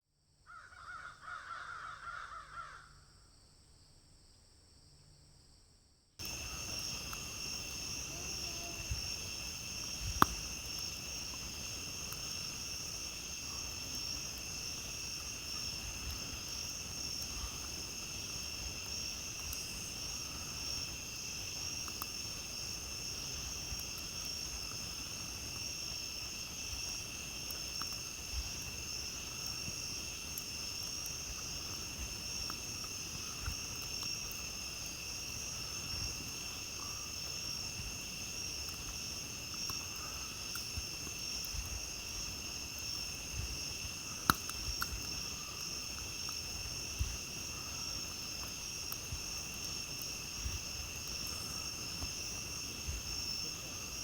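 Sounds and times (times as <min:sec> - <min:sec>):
crickets chirping: 0:00.2 - 0:54.0
crow cawing: 0:00.5 - 0:03.0.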